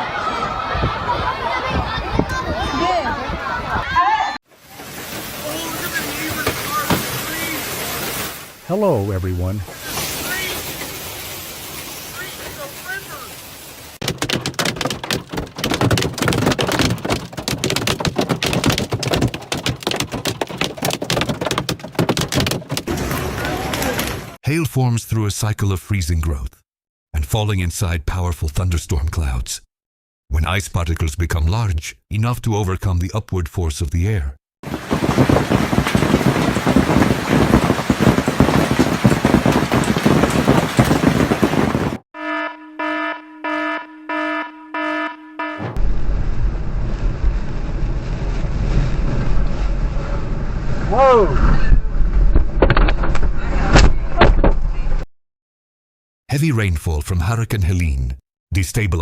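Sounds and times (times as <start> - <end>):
hailstones striking hard surface: 4.9 - 8.4, 9.8 - 24.2, 34.6 - 42.0
car horn blasts: 42.2 - 45.8.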